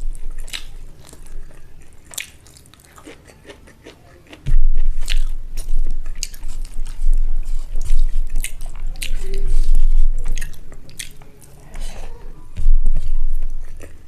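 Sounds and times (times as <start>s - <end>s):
wet chewing: 0.0s - 14.0s
mouth clicks and smacks: 0.1s - 11.9s
low rumble: 4.5s - 10.8s, 11.8s - 13.8s.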